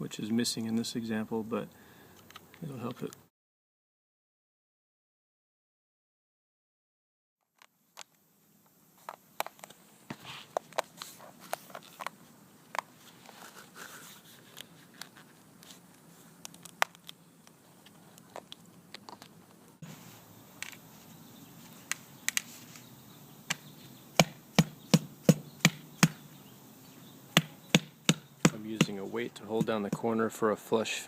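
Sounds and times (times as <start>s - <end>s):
sharp knocks: 24.2s - 26.2s, 27.4s - 30.1s.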